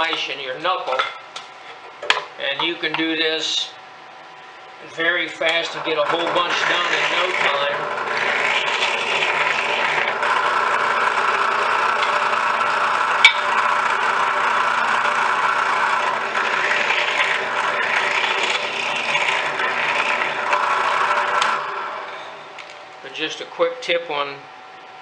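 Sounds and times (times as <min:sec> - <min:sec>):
drill press running: 0:05.0 - 0:23.1.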